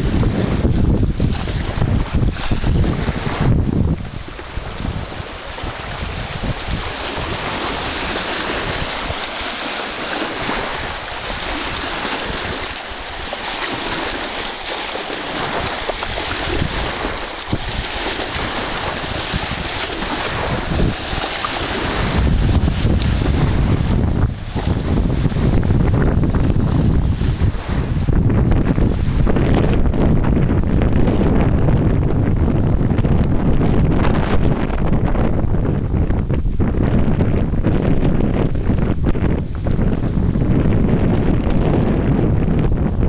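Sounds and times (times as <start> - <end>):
small waves: 0.0 - 31.7
wind buffeting microphone: 0.0 - 43.0.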